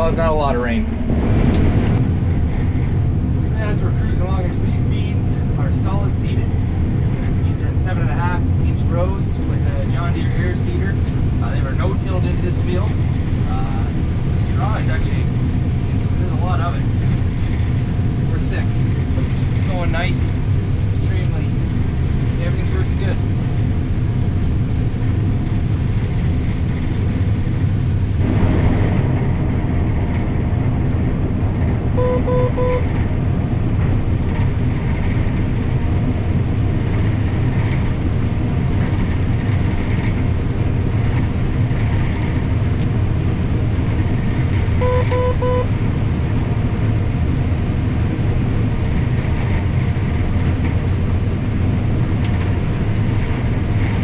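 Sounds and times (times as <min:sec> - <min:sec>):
combine harvester drone: 0:00.0 - 0:54.0
quick electronic beeps: 0:32.0 - 0:32.8, 0:44.8 - 0:45.7.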